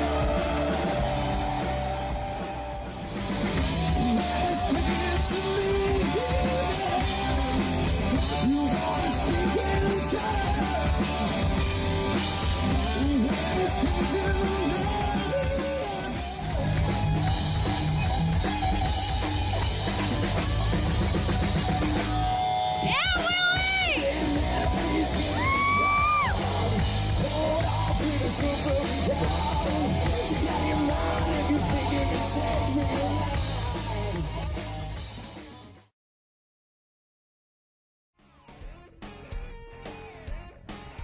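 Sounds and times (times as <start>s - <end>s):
pitch-bending guitar melody: 0.0s - 25.3s
rock band playing live: 0.0s - 35.9s, 38.2s - 41.0s.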